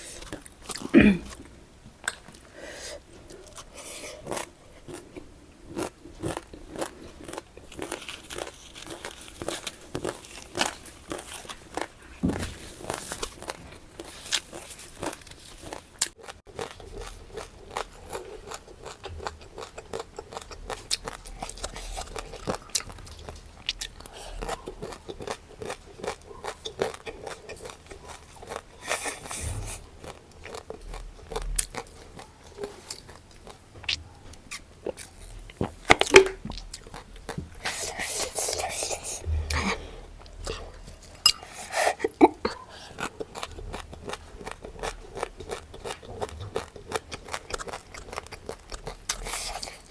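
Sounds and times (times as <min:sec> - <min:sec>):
chewing crisp food: 0:03.3 - 0:49.9.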